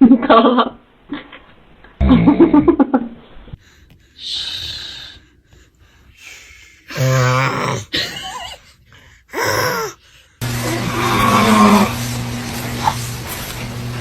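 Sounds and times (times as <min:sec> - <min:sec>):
man snoring: 0:06.9 - 0:08.0, 0:09.3 - 0:12.1.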